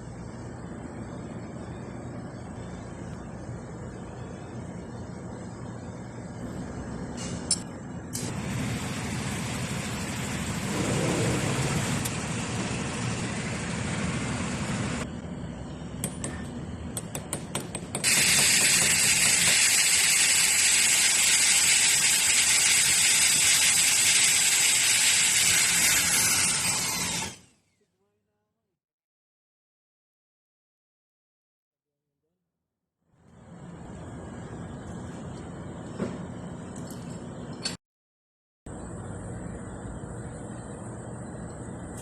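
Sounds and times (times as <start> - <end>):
machine running with low hum: 0.0 - 25.6, 33.2 - 37.7, 38.7 - 42.0
power tool high whir: 18.0 - 27.5.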